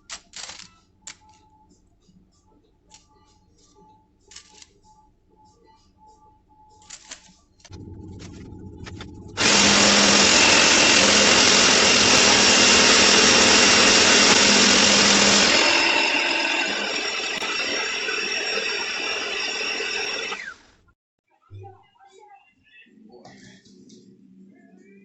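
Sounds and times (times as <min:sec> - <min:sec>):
motor winding down: 0:07.7 - 0:20.6
electric power tool running: 0:07.8 - 0:20.6.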